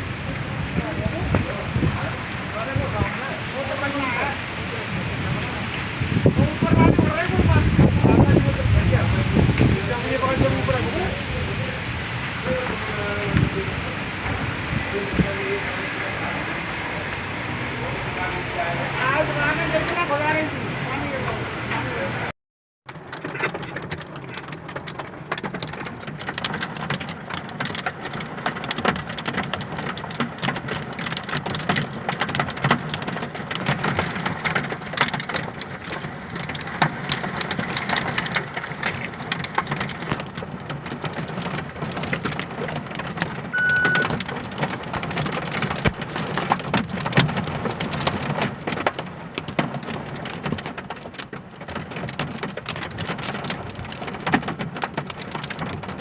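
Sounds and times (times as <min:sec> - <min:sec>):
heavy rain on hard surfaces: 0:00.0 - 0:56.0
short high beep: 0:43.5 - 0:44.1.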